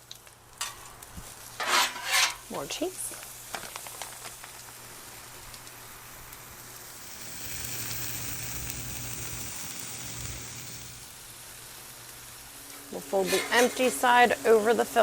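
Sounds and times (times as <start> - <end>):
food sizzling on a griddle: 0.0 - 15.0.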